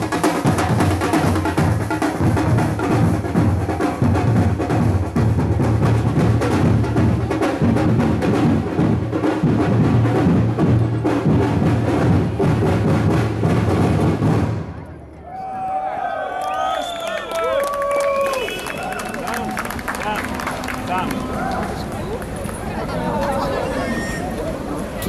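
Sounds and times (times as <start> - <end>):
drum and percussion music: 0.0 - 14.8, 18.3 - 23.0.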